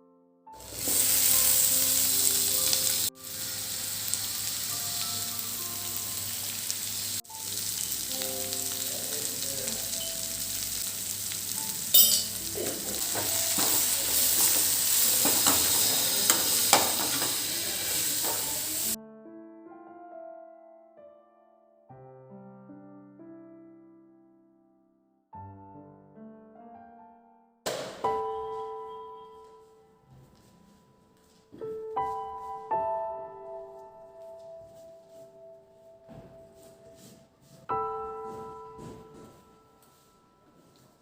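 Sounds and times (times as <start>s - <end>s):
soft piano music: 0.0s - 41.0s
food sizzling in a pan: 0.6s - 19.0s.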